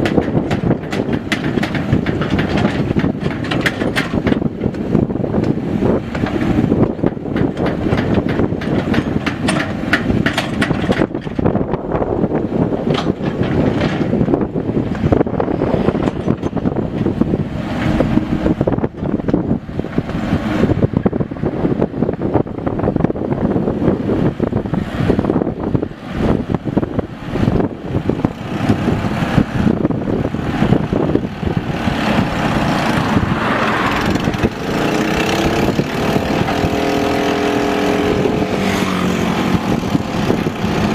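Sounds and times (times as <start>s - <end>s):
machine clanks and knocks: 0.0s - 11.8s, 12.8s - 15.2s, 15.8s - 18.1s
diesel engine running under load: 0.0s - 40.9s.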